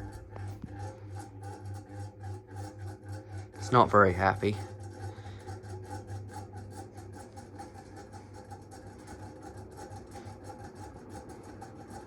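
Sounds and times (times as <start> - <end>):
ceiling fan motor hum: 0.0 - 12.0
rhythmic scraping of fan bearings: 0.0 - 12.0.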